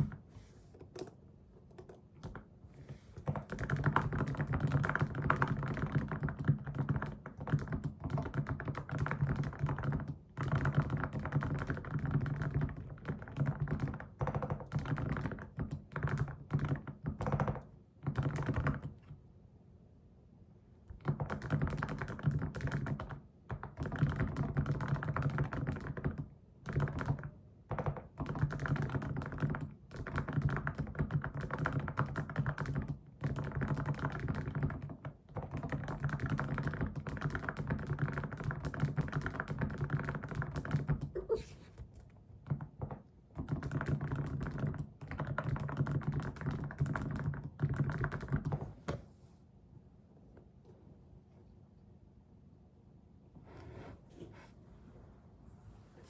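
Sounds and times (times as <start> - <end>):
fast typing on keyboard: 0.0 - 0.2, 0.8 - 2.5, 3.2 - 19.2, 20.9 - 41.2, 42.4 - 48.7.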